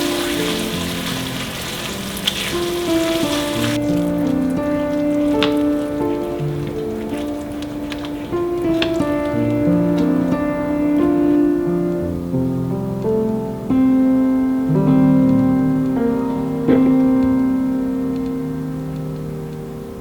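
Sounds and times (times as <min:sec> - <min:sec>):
slow piano chords: 0:00.0 - 0:20.0.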